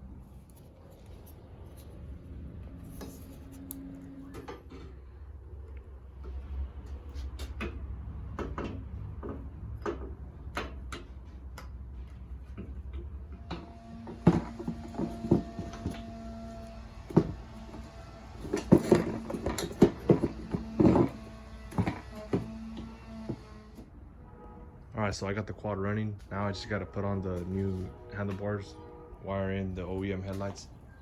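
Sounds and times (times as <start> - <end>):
tools clanking and clicking: 12.5 - 23.4.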